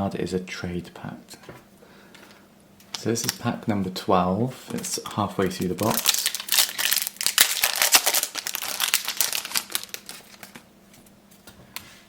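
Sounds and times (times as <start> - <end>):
wrapper tearing and crinkling: 5.4 - 10.6.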